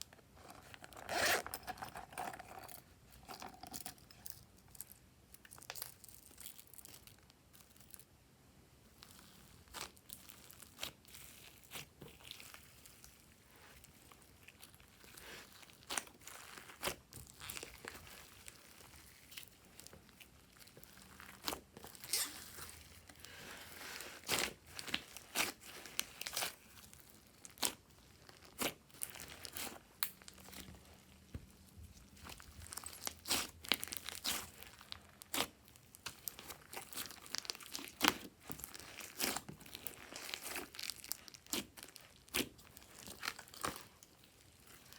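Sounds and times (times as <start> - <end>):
slime being squished by hand: 9.0 - 44.9.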